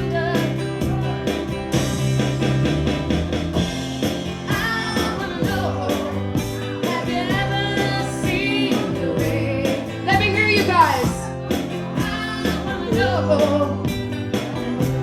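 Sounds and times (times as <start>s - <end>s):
person singing: 0.0s - 1.4s, 4.4s - 11.2s, 12.0s - 14.1s
live rock band playing: 0.0s - 15.0s.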